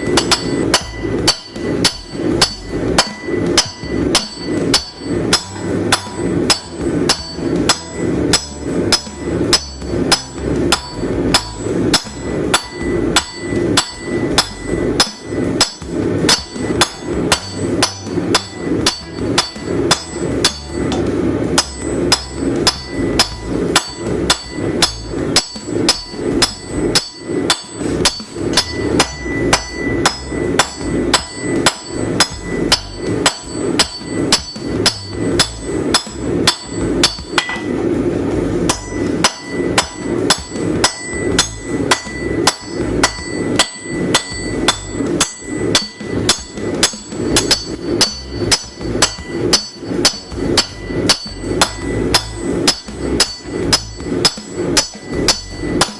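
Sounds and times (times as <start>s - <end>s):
hammer ringing on anvil: 0.0s - 55.9s.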